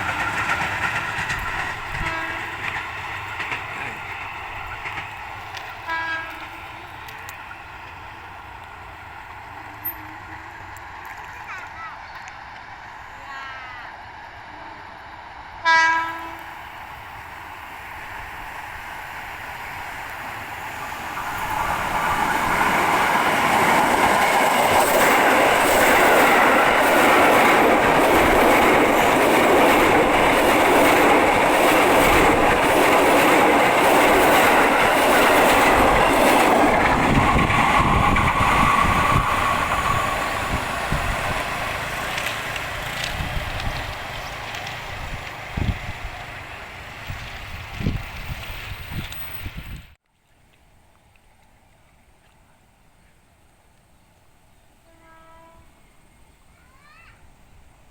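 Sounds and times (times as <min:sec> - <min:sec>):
train wheels clattering over rails: 0:00.0 - 0:12.6, 0:16.0 - 0:49.7
train horn blast: 0:02.0 - 0:02.7, 0:05.8 - 0:06.7, 0:15.6 - 0:16.5, 0:54.8 - 0:55.9.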